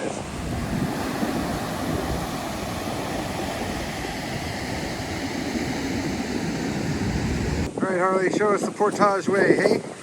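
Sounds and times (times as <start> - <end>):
waterfall rushing: 0.0 - 7.7.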